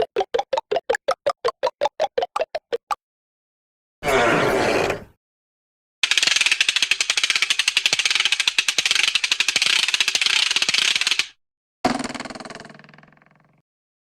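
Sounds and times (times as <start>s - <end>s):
fast sharp clicks: 6.0s - 11.3s.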